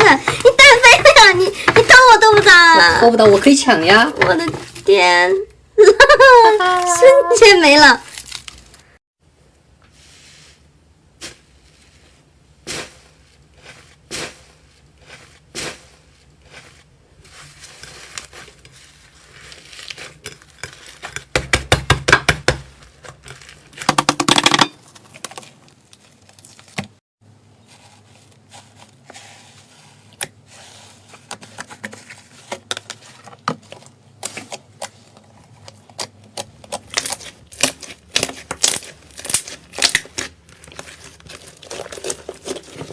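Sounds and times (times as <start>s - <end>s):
slime clicking and crackling: 35.6s - 42.9s.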